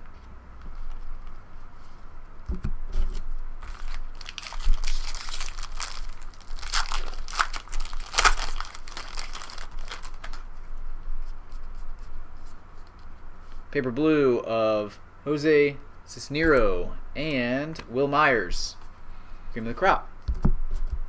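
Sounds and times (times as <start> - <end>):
wrappers crinkling and tearing: 3.0 - 10.5.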